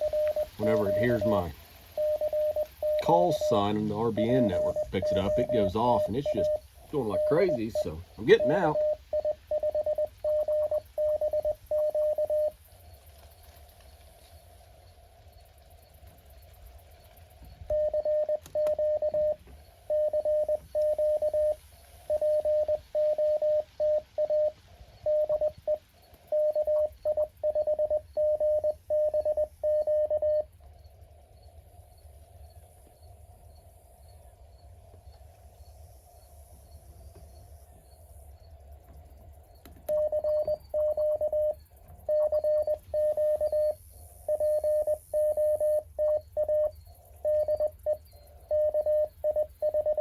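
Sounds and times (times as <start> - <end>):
morse code tone: 0.0 - 12.6, 17.7 - 30.5, 39.9 - 50.0
faint receiver hiss: 0.0 - 14.9.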